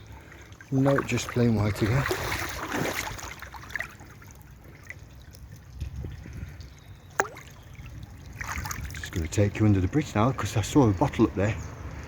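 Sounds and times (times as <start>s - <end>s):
boots wading through water: 0.0s - 9.4s
water drips: 0.0s - 9.6s
brook water trickling: 0.0s - 12.0s
sharp water plop: 0.8s - 4.4s, 7.1s - 9.2s.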